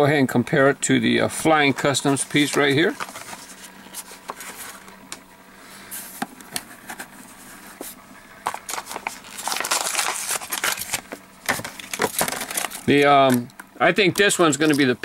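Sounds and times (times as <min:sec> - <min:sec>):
plastic blister packs crinkling: 0:01.6 - 0:05.0, 0:08.4 - 0:13.5.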